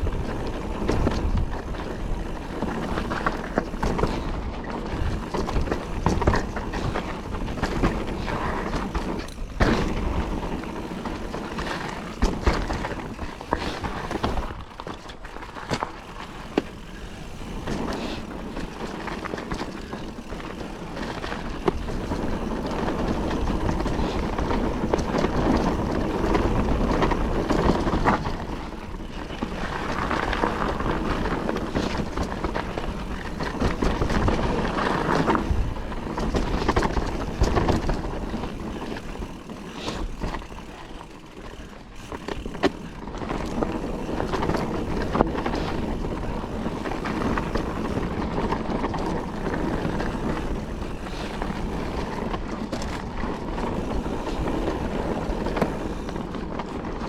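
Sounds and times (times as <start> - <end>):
wind noise on microphone: 0.0 - 15.4, 16.2 - 40.7
bike rattling over bumps: 0.0 - 57.0
tyres skidding over dirt and stones: 0.0 - 57.0.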